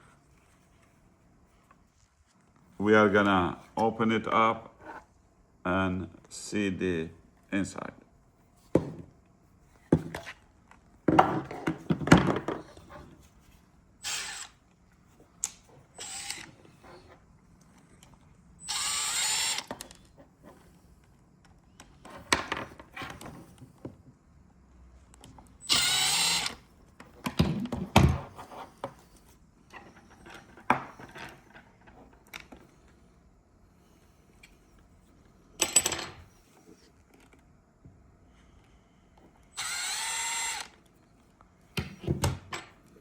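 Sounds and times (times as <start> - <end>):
power drill backing out screws: 14.0 - 14.6, 16.0 - 16.8, 18.6 - 19.9, 25.6 - 26.6, 39.5 - 40.8.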